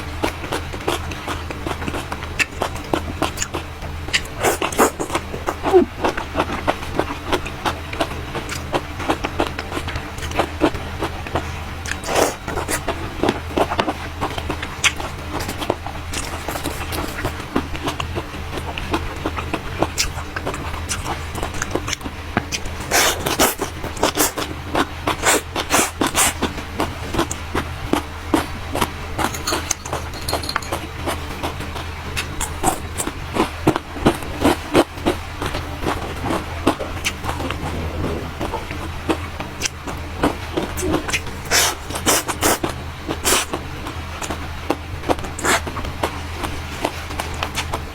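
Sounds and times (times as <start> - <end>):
crunching and chewing food: 0.0 - 47.9
low steady hum: 0.0 - 47.9
crunching and scraping of salad: 28.3 - 33.5
wet mouth clicks: 37.0 - 38.8.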